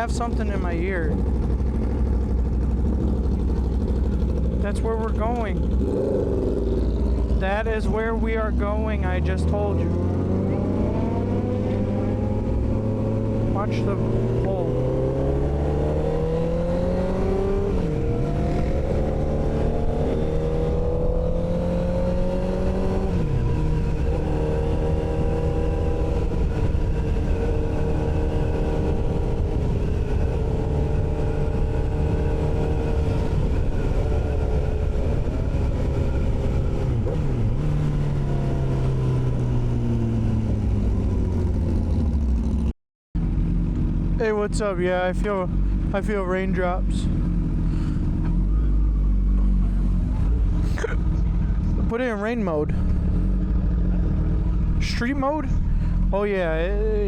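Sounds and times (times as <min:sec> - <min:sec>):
motorcycle engine accelerating: 0:00.0 - 0:57.0
wind noise on microphone: 0:14.2 - 0:42.2.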